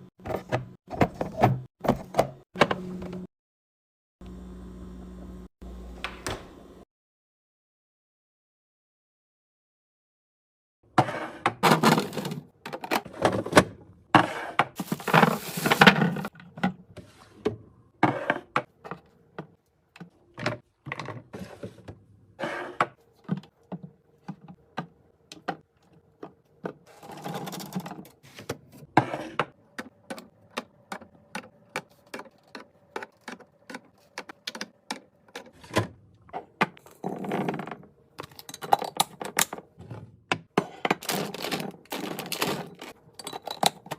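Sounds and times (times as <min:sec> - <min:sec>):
containers clicking and knocking: 0:23.2 - 0:28.2, 0:29.4 - 0:35.6, 0:36.4 - 0:43.9
packaging rustling: 0:41.0 - 0:42.9.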